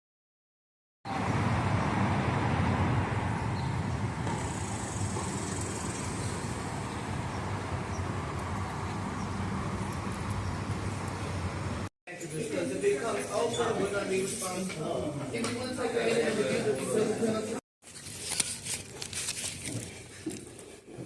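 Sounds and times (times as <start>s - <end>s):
vehicle rumble: 1.1s - 11.9s.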